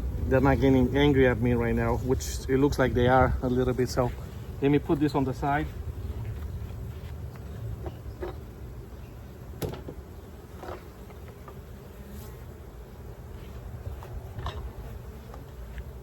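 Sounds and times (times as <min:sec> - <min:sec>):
bees buzzing: 0:00.0 - 0:16.0
knocks on wooden hive box: 0:09.6 - 0:10.0.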